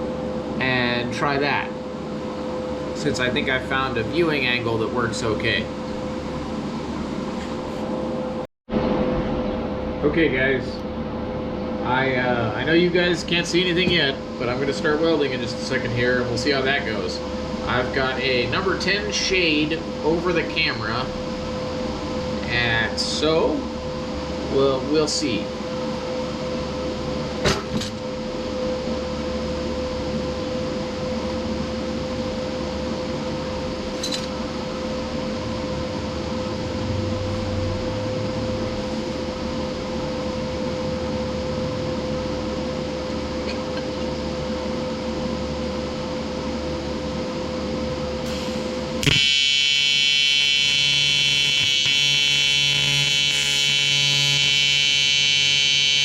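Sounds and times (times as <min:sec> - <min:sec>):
steady low hum: 0:00.0 - 0:56.0
welding arc harsh buzz: 0:48.2 - 0:56.0.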